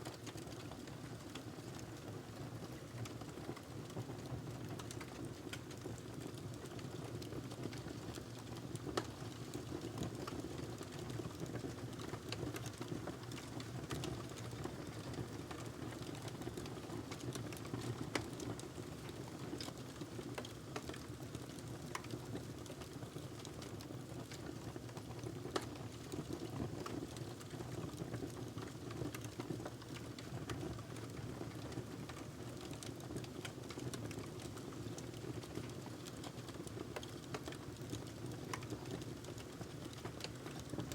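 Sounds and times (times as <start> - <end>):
wood fire crackling: 0.1 - 40.9
fire popping and snapping: 4.7 - 40.9.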